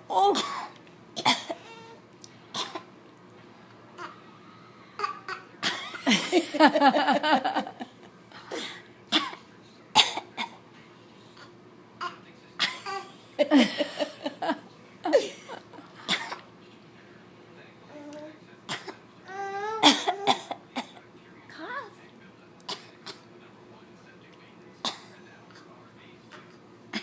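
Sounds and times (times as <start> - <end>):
short fake coughs: 10.0 - 10.6, 19.8 - 21.0, 22.7 - 23.3.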